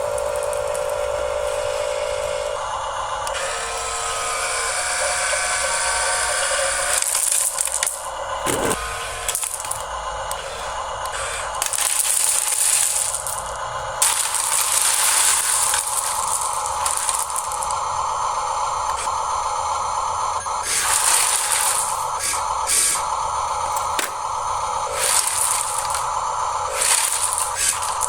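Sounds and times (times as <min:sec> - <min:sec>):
small electric motor whine: 0:00.0 - 0:28.0
bricks rattling and clicking: 0:07.4 - 0:08.8.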